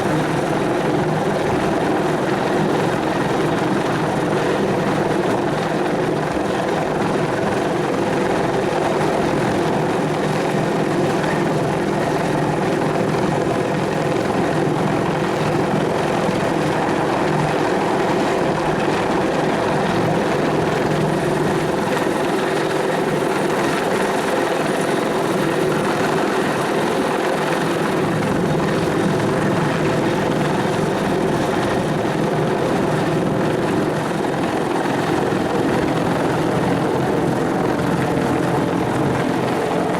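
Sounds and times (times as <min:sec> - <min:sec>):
helicopter engine whine: 0:00.0 - 0:39.9
helicopter rotor beat: 0:00.0 - 0:39.9.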